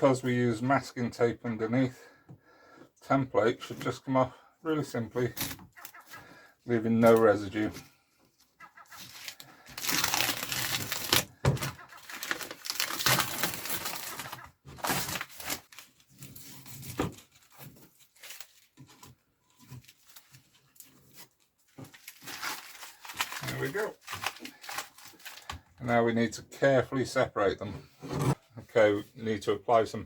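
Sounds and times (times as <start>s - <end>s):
paper and tape crinkling and tearing: 8.8s - 25.7s.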